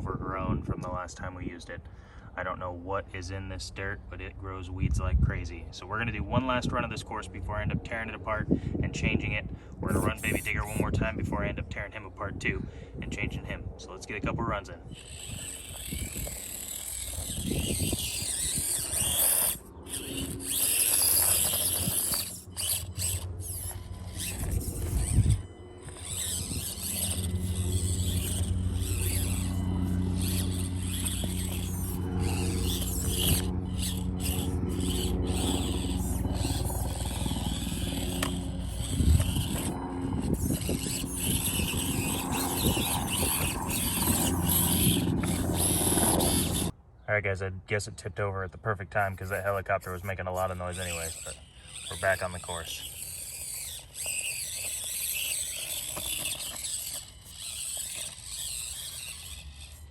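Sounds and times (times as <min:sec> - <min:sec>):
helicopter drone overhead: 0:00.0 - 0:46.9, 0:48.9 - 0:59.9
toy car electric motor whining: 0:09.0 - 0:11.2, 0:14.1 - 0:46.8, 0:48.9 - 0:59.9.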